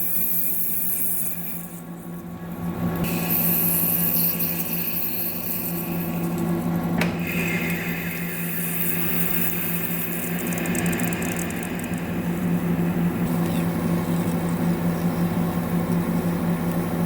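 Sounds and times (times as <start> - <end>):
metal cutting noise: 3.0 - 13.4
lathe humming: 3.0 - 14.3.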